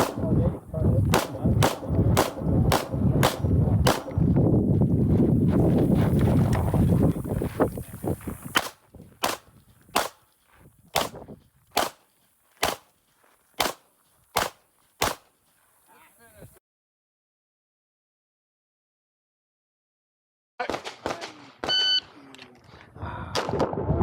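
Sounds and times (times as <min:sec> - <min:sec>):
pistol shots: 0:00.0 - 0:00.4, 0:01.0 - 0:04.4, 0:08.5 - 0:10.2, 0:10.9 - 0:11.2, 0:11.8 - 0:12.9, 0:13.6 - 0:15.3.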